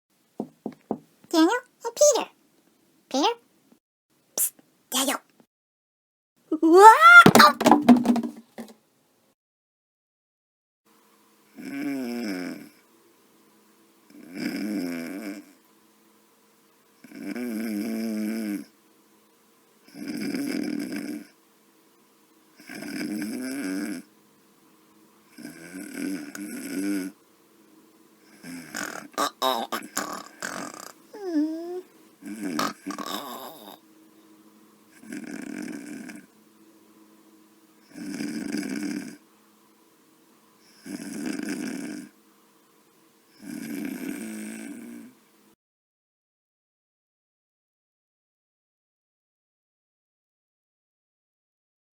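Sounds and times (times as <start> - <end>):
snoring with wavering pitch: 11.5 - 12.8, 14.1 - 15.6, 17.0 - 18.7, 19.9 - 21.4, 22.6 - 24.1, 25.3 - 27.2, 28.2 - 33.8, 34.9 - 36.3, 37.8 - 39.2, 40.6 - 42.2, 43.4 - 45.2.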